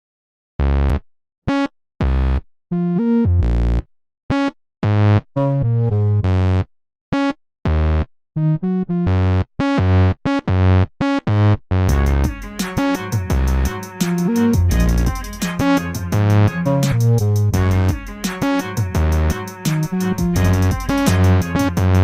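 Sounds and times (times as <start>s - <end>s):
synthesizer chords: 11.9s - 22.0s.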